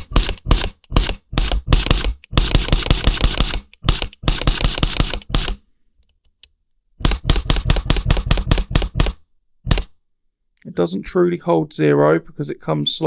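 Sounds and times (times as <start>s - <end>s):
airsoft rifle shots: 0.0s - 5.6s, 7.0s - 9.9s.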